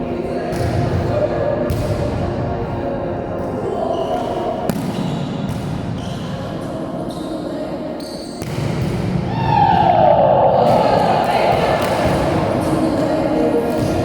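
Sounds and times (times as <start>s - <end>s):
players' voices: 9.3s - 14.0s.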